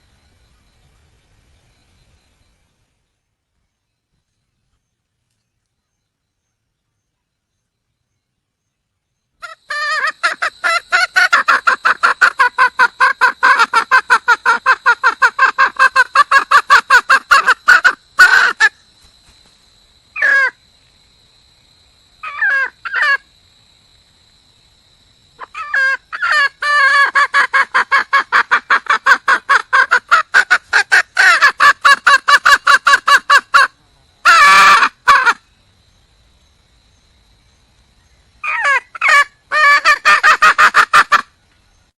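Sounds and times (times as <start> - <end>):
hen clucking: 9.4 - 18.7, 25.4 - 35.4, 38.4 - 41.3.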